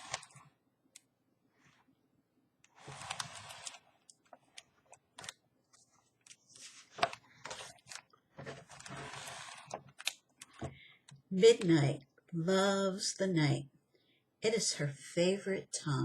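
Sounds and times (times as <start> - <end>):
book pages rustling: 2.8 - 10.6.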